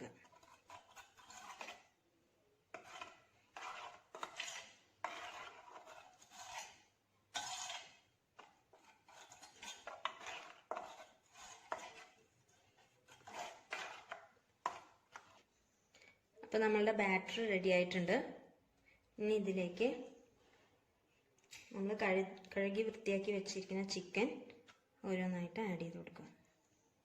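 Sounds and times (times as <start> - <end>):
spoon stirring in a bowl: 0.0 - 2.0, 2.6 - 15.6.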